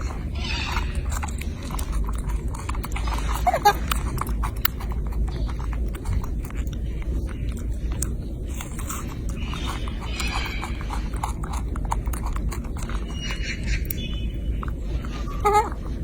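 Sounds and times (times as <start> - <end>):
monkey eating clicks and smacks: 0.0 - 16.0
monkey squeaky call: 0.3 - 1.1, 3.4 - 3.8, 15.3 - 15.8.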